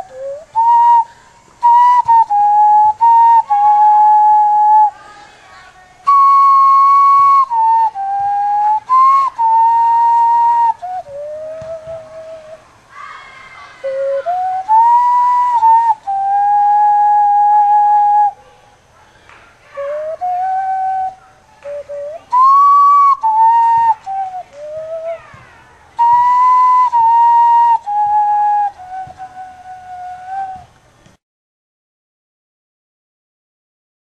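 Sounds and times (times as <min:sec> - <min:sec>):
hand whistle melody: 0:00.0 - 0:05.0, 0:06.0 - 0:12.6, 0:13.8 - 0:18.4, 0:19.7 - 0:25.4, 0:26.0 - 0:30.7.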